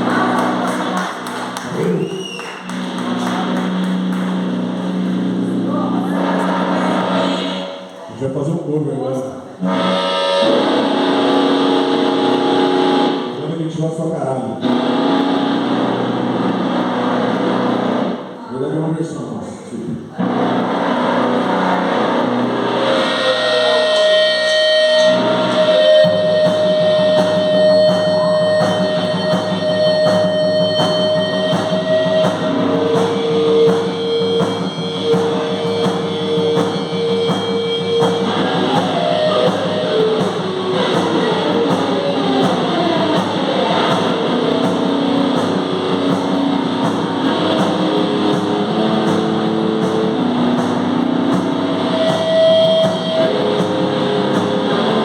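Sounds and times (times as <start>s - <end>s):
drums: 0.0s - 7.6s, 20.2s - 55.0s
distorted electric guitar: 0.0s - 18.5s, 20.0s - 55.0s
bass: 0.0s - 55.0s.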